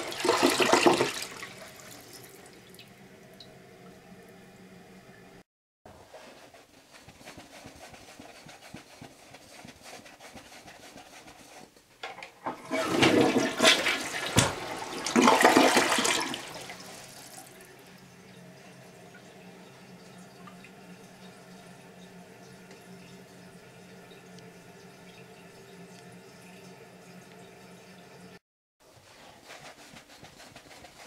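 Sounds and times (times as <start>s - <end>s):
toilet flushing: 0.0s - 5.4s, 12.4s - 28.4s.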